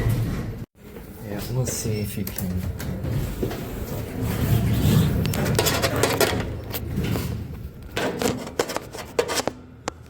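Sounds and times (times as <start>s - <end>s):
clicks rattles and scrapes: 4.3s - 9.6s.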